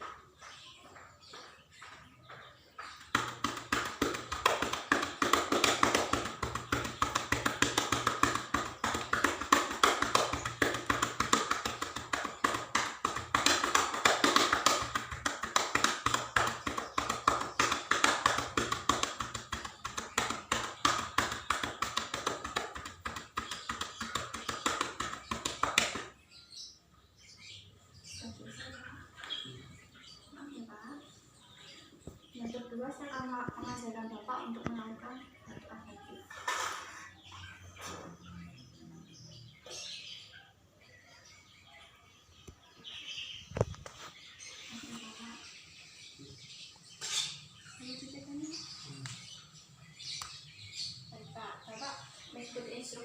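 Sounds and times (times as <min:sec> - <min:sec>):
cupped hands clapping on back: 0:02.7 - 0:26.2.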